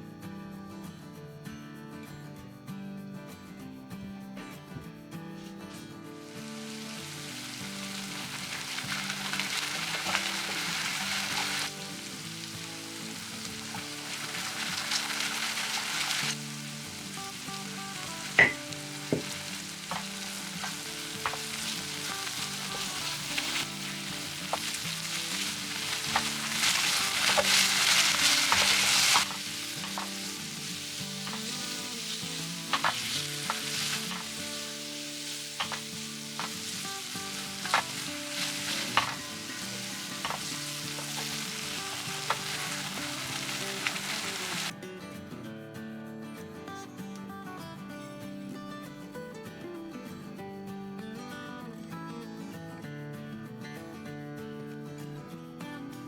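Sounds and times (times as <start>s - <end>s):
food sizzling in a frying pan: 6.2s - 44.7s.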